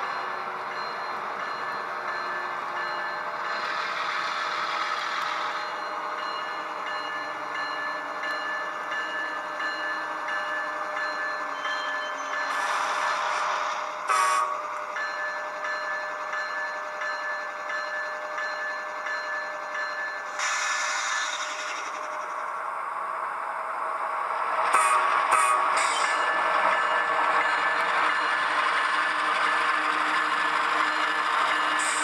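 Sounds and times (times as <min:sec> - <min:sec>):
model locomotive engine hum: 0:00.0 - 0:32.0
hiss: 0:12.5 - 0:14.5, 0:20.3 - 0:22.4, 0:31.7 - 0:32.0.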